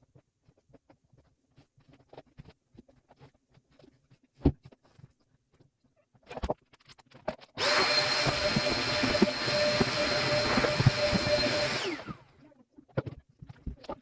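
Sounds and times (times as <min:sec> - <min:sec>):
appliance motor whining: 0:07.6 - 0:12.3.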